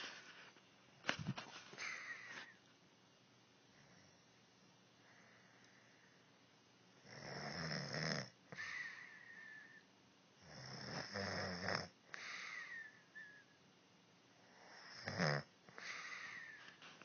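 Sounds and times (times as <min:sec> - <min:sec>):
woman snoring: 0:07.0 - 0:09.8, 0:10.4 - 0:13.3, 0:14.5 - 0:16.6
whistling out-breath: 0:12.3 - 0:13.6.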